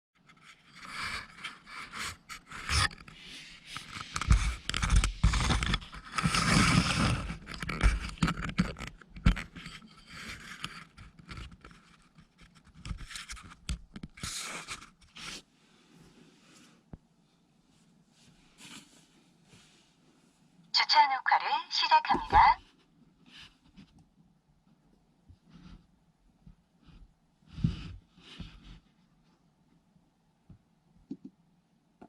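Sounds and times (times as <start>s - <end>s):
scraping and rustling: 0.2s - 16.9s.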